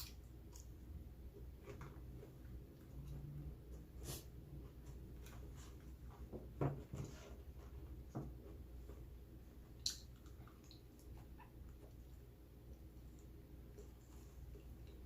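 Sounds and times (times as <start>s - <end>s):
person chewing food: 9.7s - 12.3s
wet mouth clicks and smacks: 9.8s - 11.5s.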